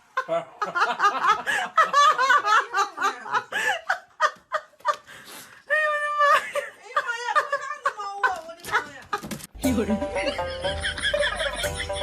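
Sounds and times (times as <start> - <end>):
person laughing: 9.7 - 12.0.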